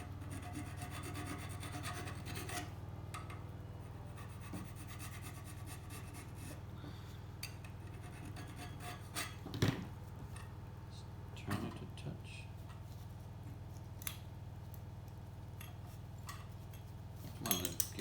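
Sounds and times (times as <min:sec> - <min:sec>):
hand file rasping on metal: 0:00.0 - 0:02.7, 0:07.8 - 0:09.4.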